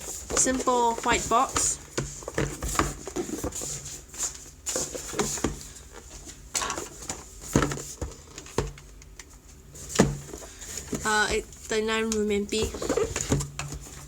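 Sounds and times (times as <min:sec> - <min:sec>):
cardboard box being handled: 0:00.0 - 0:08.8, 0:12.6 - 0:14.0
faint steady hum: 0:00.0 - 0:14.0.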